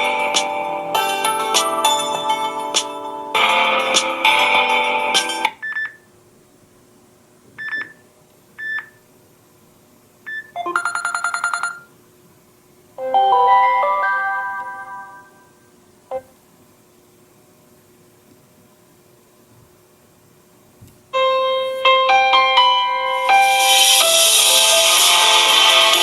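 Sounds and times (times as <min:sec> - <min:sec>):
melodic phone ringtone: 0:00.0 - 0:05.5, 0:10.6 - 0:11.9, 0:13.0 - 0:15.5.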